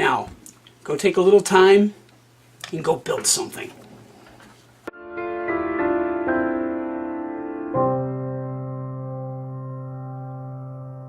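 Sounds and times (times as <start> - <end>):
keyboard chords: 4.9 - 11.0.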